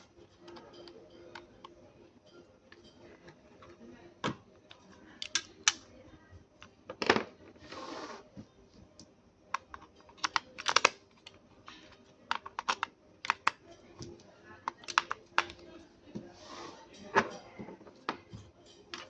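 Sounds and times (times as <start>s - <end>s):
small plastic clicks and taps: 12.3s - 14.1s, 14.7s - 15.6s.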